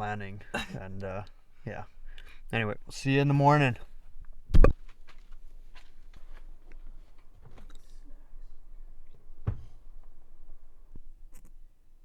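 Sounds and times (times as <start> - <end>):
faint rustling: 0.4 - 12.0
loud thump: 4.5 - 4.8, 9.4 - 9.8.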